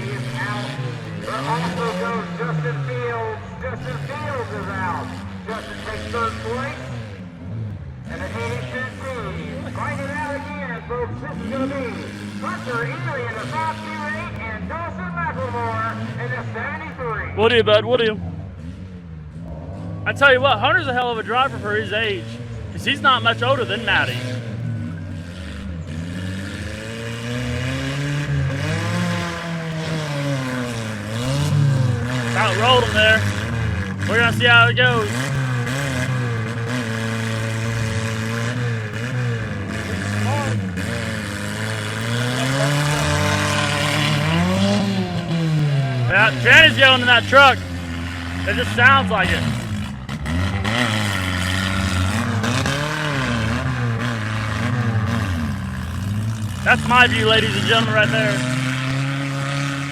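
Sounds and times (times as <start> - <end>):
engine revving hard: 0.0 - 59.9
transmission whining loudly: 28.1 - 58.9.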